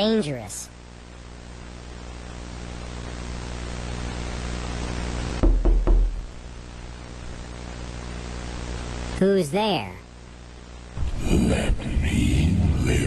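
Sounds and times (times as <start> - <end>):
low droning hum with hiss: 0.0 - 13.0
heavy knocks on door: 5.4 - 6.2.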